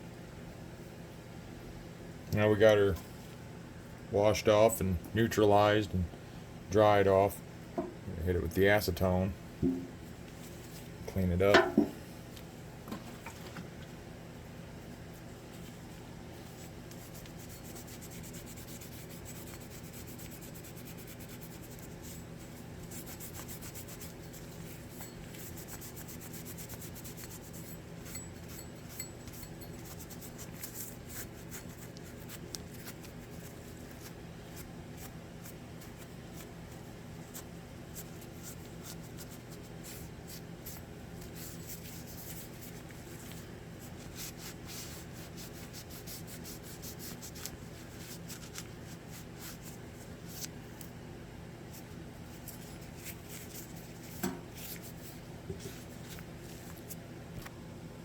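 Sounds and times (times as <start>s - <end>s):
steady low hum: 0.0s - 58.0s
rag rubbing on steel: 23.0s - 31.3s.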